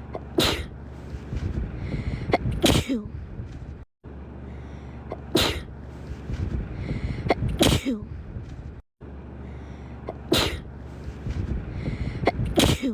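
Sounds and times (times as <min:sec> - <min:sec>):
woman sneezing: 0:10.2 - 0:10.6, 0:12.5 - 0:12.9.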